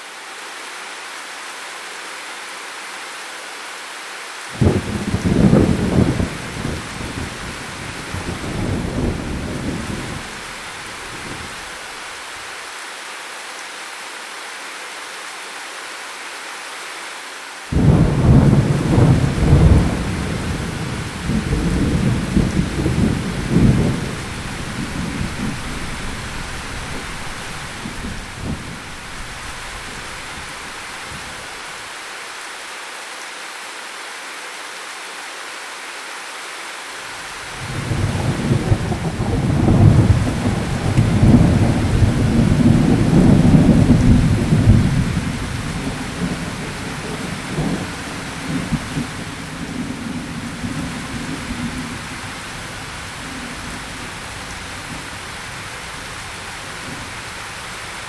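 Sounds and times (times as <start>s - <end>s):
steady rain hiss: 0.0s - 58.0s
thunder rolling: 4.6s - 11.6s, 17.7s - 31.6s, 37.6s - 55.1s.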